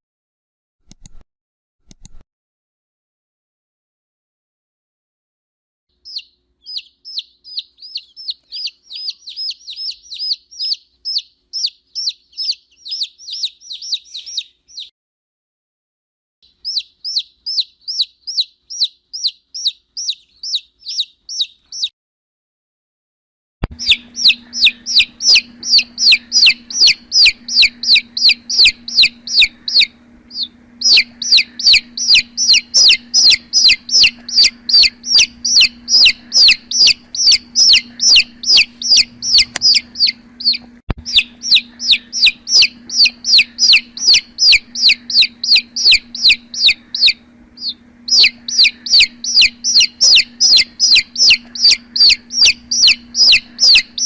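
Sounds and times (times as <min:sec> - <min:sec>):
chicks peeping: 0:06.0 - 0:14.9, 0:16.4 - 0:21.9, 0:23.6 - 0:54.0
faint low hum: 0:06.0 - 0:14.9, 0:23.7 - 0:54.0.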